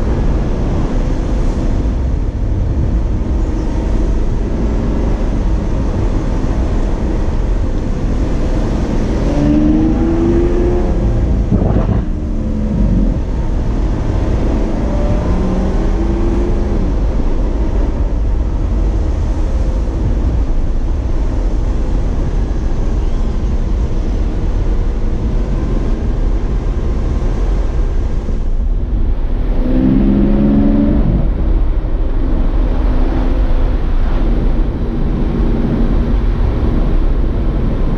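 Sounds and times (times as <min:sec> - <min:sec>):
road and wind rumble: 0:00.0 - 0:37.9
car engine accelerating: 0:02.8 - 0:19.3, 0:29.0 - 0:37.9.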